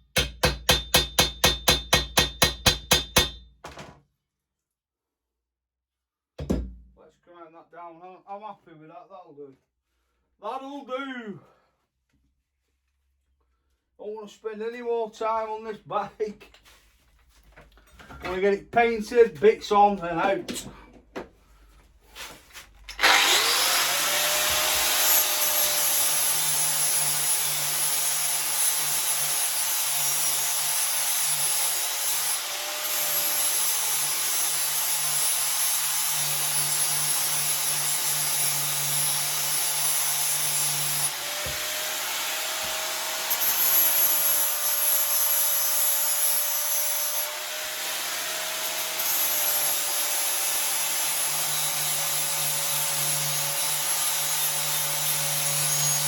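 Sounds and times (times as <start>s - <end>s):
angle grinder grinding metal: 22.9s - 56.0s.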